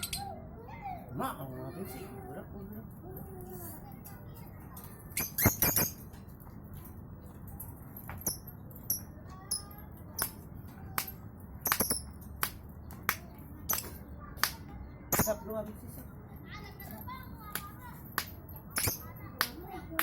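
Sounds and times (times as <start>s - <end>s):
lovebird shrill chirps: 5.2s - 6.0s.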